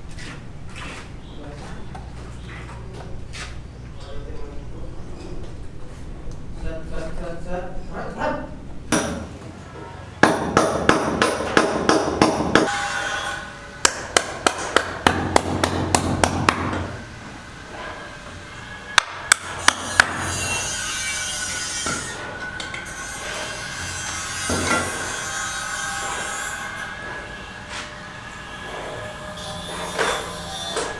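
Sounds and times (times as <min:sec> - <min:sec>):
hammer blows: 0:17.8 - 0:30.9.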